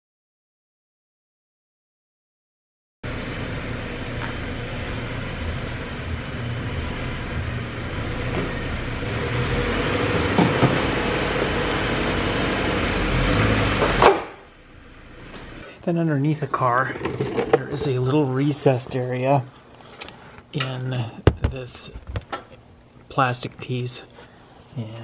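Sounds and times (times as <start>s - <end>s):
car engine running: 3.1s - 20.0s.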